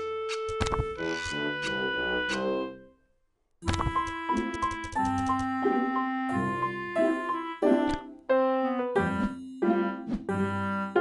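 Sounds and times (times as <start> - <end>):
light keyboard tune: 3.6 - 11.0.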